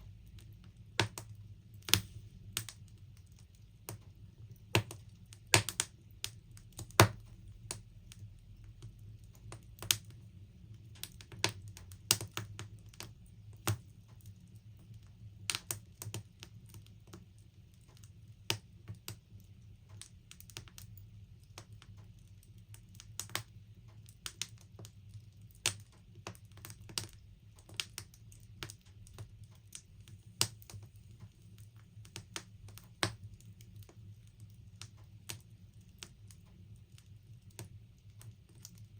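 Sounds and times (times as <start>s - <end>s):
faint low hum: 0.0s - 15.5s
wood logs crackling in burner: 0.0s - 38.9s.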